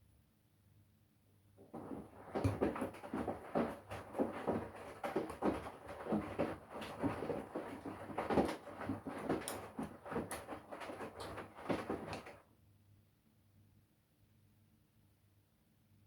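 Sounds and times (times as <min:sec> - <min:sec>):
washing machine tumbling laundry: 0:01.6 - 0:12.5
water sloshing: 0:01.7 - 0:12.4.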